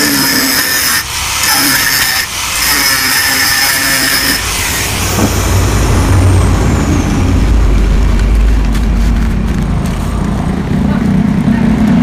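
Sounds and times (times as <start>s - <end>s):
power tool on metal: 0.0s - 5.6s
low rumble: 4.4s - 12.0s.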